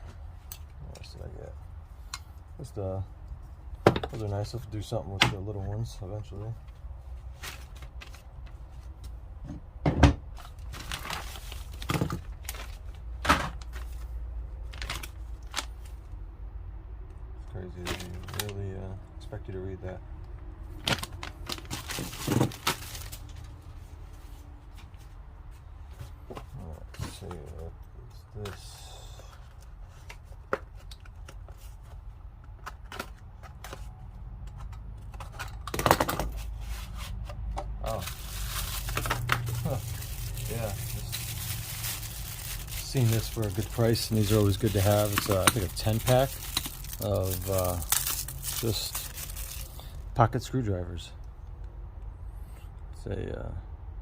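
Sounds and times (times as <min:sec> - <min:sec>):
items knocking on work surface: 0:09.4 - 0:10.2
packaging rustling: 0:10.4 - 0:16.0, 0:20.8 - 0:23.6, 0:37.9 - 0:50.0.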